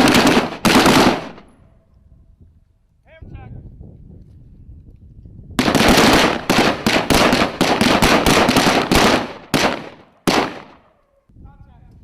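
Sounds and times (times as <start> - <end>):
rapid gunfire: 0.0 - 1.4, 5.6 - 10.8
single gunshots: 0.0 - 1.5, 5.6 - 10.8.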